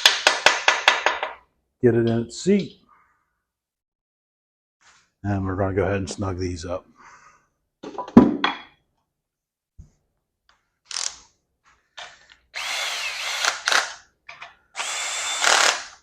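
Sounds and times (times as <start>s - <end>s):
power drill motor whine: 12.6s - 14.0s, 14.8s - 16.0s.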